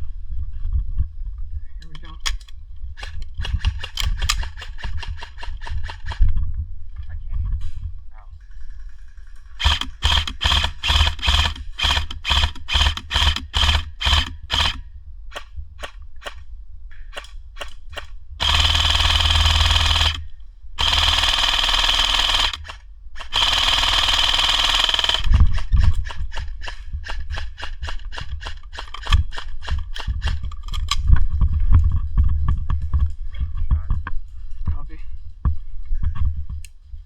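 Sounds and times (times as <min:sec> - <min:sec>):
airsoft rifle shots: 0:08.6 - 0:16.4, 0:17.1 - 0:30.4.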